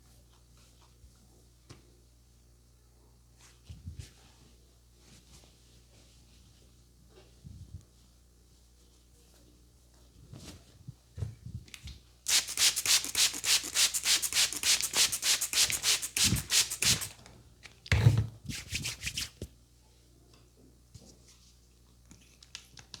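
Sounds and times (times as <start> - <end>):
hands rubbing hair and scalp: 12.3 - 17.1, 18.5 - 19.4.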